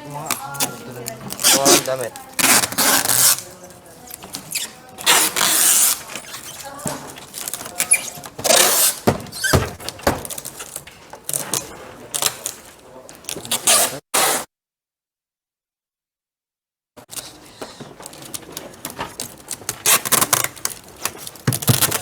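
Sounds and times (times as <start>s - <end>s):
packing tape ripping: 0.1s - 14.5s, 17.1s - 22.0s
handling knocks and clicks: 5.9s - 13.5s, 17.1s - 22.0s.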